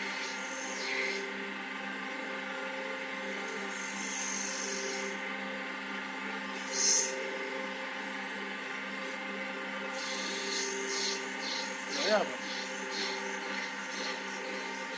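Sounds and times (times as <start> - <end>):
wood lathe motor whine: 0.0 - 14.9
turning tool cutting wood: 9.9 - 14.9.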